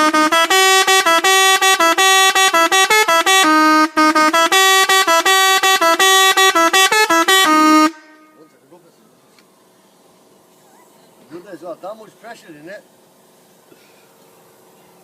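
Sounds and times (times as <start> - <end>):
multi-tone bus horn tune: 0.0 - 8.6.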